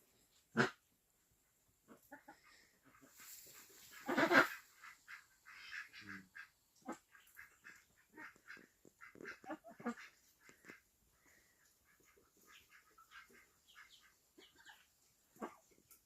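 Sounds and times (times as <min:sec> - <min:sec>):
duck quacking: 0:00.5 - 0:00.8, 0:01.9 - 0:10.8, 0:11.9 - 0:15.7
duckling peeping: 0:11.8 - 0:15.6.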